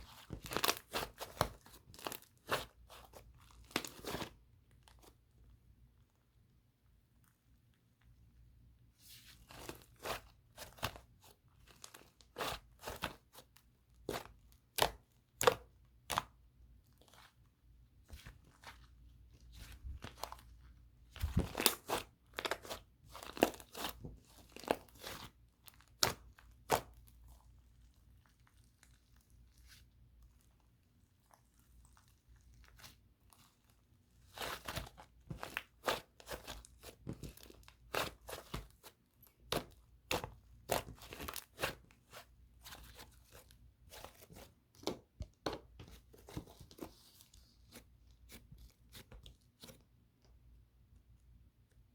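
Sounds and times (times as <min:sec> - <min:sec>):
clay slime crackling: 0:00.0 - 0:05.2, 0:09.2 - 0:50.4.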